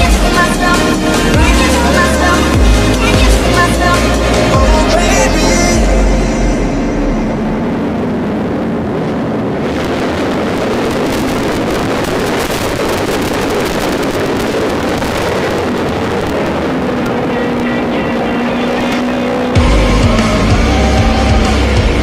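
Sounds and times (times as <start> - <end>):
motorcycle engine: 0.0 - 22.0
road noise: 0.0 - 22.0
wind buffeting microphone: 6.8 - 19.6.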